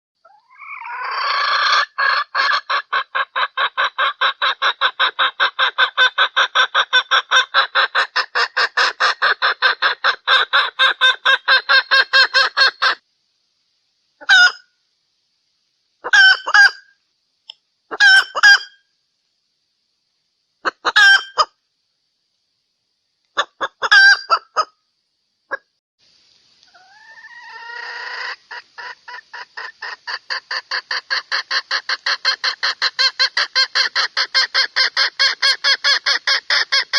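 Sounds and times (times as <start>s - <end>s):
hen cackling: 0.2s - 13.0s, 14.2s - 14.7s, 16.0s - 16.9s, 17.9s - 18.8s, 20.6s - 21.6s, 23.4s - 24.8s, 26.7s - 36.9s
hen squawking calls: 0.3s - 13.0s, 14.2s - 14.6s, 16.0s - 16.8s, 17.9s - 18.8s, 23.4s - 24.7s, 26.7s - 36.9s.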